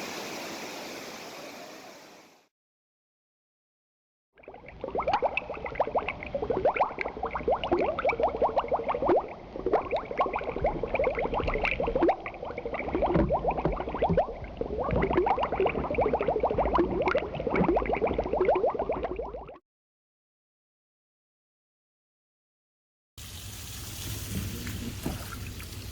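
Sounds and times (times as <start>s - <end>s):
water gurgling and splashing: 4.4s - 19.6s, 24.0s - 25.9s.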